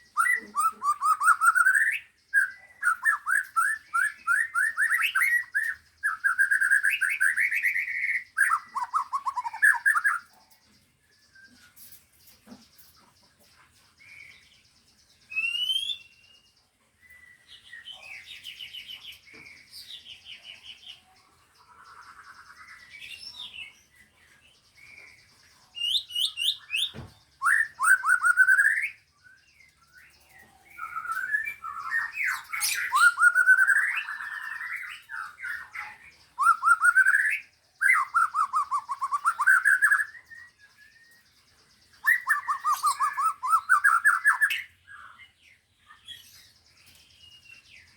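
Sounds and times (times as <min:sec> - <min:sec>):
songbirds singing: 0:00.0 - 0:47.9.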